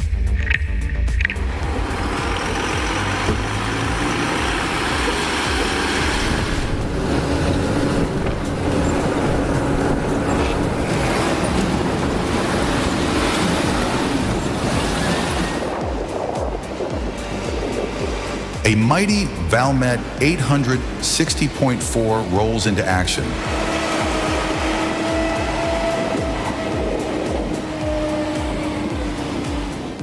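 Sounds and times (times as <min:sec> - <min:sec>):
heavy vehicle engine and road noise: 0:00.0 - 0:30.0.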